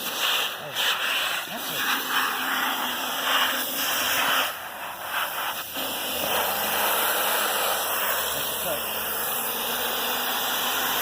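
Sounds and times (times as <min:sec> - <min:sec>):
air duster spraying hiss: 0:00.0 - 0:11.0.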